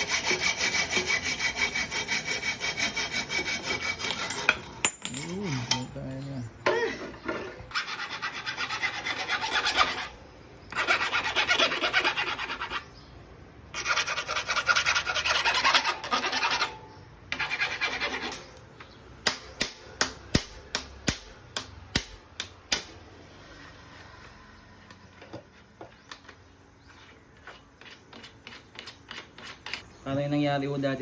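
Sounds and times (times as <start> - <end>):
rasping scraping work noise: 0.0 - 6.2, 7.0 - 13.0, 13.7 - 18.6, 23.2 - 29.9.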